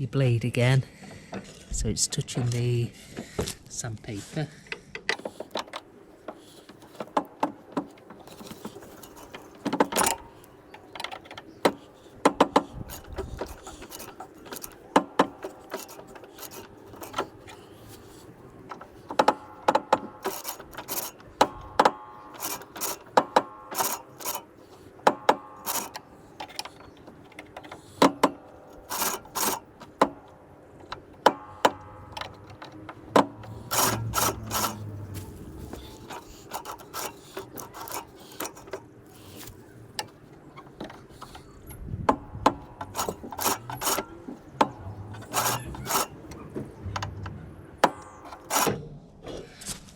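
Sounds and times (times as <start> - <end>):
metal clicks and clinks: 30.8 - 41.6.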